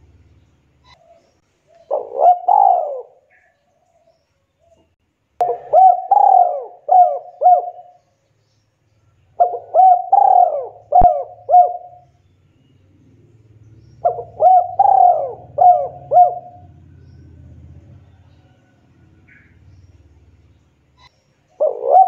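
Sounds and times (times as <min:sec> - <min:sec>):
dove cooing: 0:00.9 - 0:03.8, 0:05.4 - 0:08.0, 0:09.4 - 0:12.0, 0:14.0 - 0:19.5, 0:21.4 - 0:22.0.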